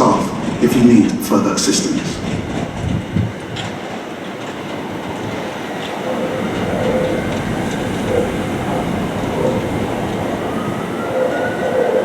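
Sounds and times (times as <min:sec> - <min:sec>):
electric train rumbling: 0:00.0 - 0:12.0
train whine rising in pitch: 0:05.1 - 0:12.0.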